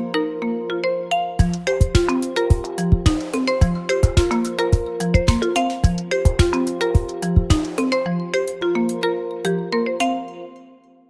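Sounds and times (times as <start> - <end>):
synthesized ringtone melody: 0.8 - 9.4
low drum beats: 1.4 - 7.8.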